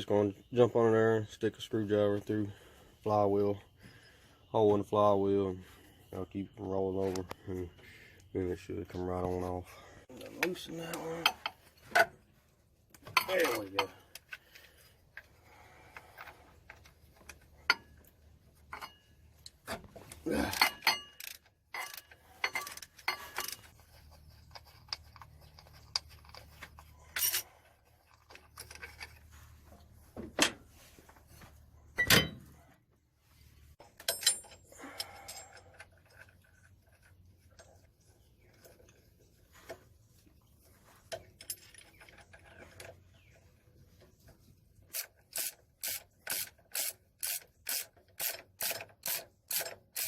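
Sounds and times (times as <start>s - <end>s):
metal parts and tools clinking: 12.9s - 15.3s, 16.0s - 31.3s, 33.8s - 39.8s, 40.9s - 43.4s.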